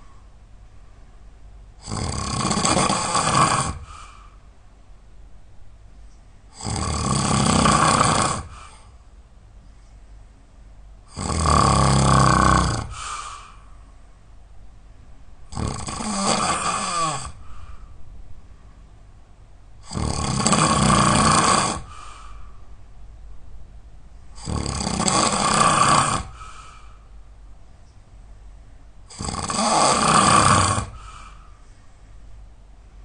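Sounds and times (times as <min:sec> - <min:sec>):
person snoring loudly: 0:01.8 - 0:04.0, 0:06.5 - 0:08.8, 0:11.1 - 0:13.3, 0:15.5 - 0:17.4, 0:19.8 - 0:22.0, 0:24.4 - 0:26.5, 0:29.1 - 0:31.4.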